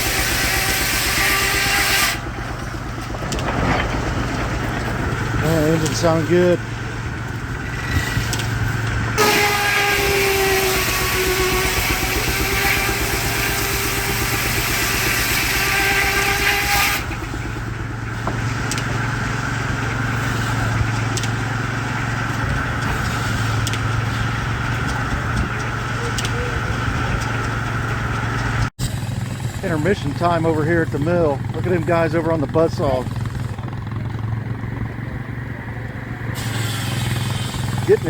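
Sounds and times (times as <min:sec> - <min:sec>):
circular saw cutting log: 0:00.0 - 0:34.4, 0:36.3 - 0:38.0
mill machinery humming: 0:00.0 - 0:38.0
machinery clicks: 0:20.7 - 0:34.8.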